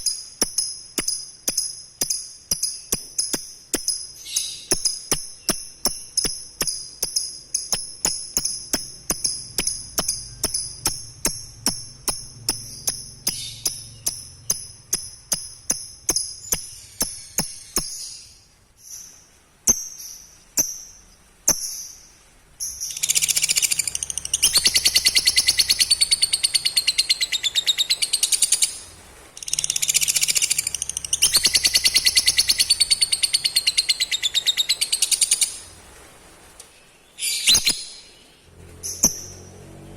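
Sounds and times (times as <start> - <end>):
sharp ticks: 0.0 - 18.0, 22.9 - 28.7, 29.4 - 34.2
bird chattering trill: 0.0 - 18.2, 22.7 - 28.8, 29.4 - 35.6
high ringing bird chirps: 0.0 - 35.7, 37.2 - 39.5.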